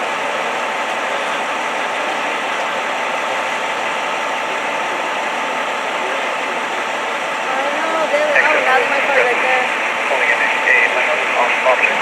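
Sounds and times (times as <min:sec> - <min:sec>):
thin steady whine: 0:00.0 - 0:12.0
vehicle engine idling: 0:00.0 - 0:12.0.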